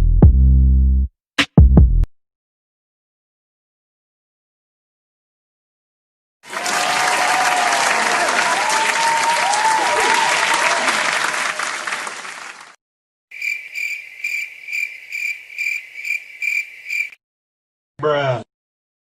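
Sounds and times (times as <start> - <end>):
crowd applauding and cheering: 6.4 - 12.8
crickets chirping: 13.3 - 17.2.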